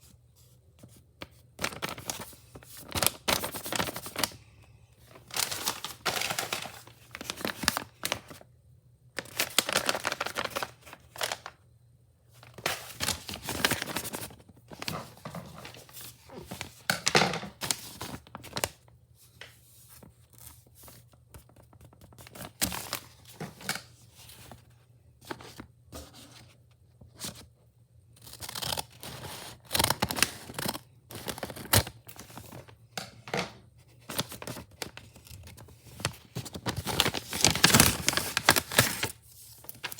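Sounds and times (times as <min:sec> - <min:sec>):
wrapping paper tearing and crumpling: 0:01.6 - 0:04.4, 0:05.1 - 0:08.4, 0:09.2 - 0:11.5, 0:35.9 - 0:39.9.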